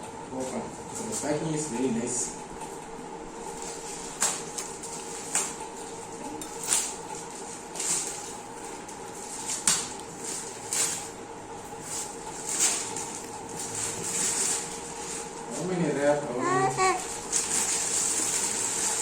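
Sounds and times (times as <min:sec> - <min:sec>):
packaging wrap crinkling: 0:03.6 - 0:15.4, 0:16.9 - 0:19.0.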